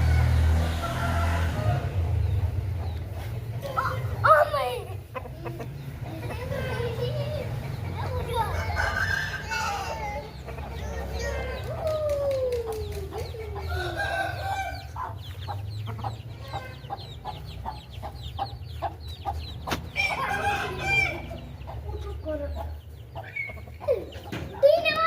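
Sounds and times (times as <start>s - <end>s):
chicken clucking: 0.7s - 25.0s.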